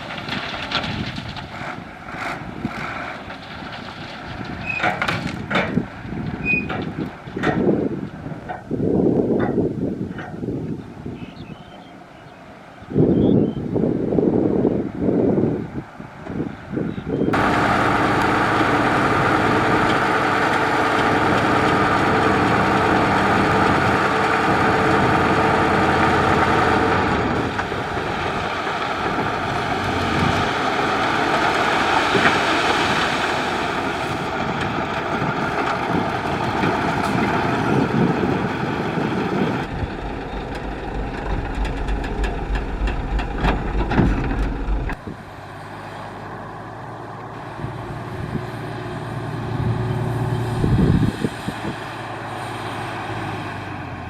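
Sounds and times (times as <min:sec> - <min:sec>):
heavy diesel machinery running: 0:17.3 - 0:54.0
deep low throbbing: 0:37.6 - 0:45.0.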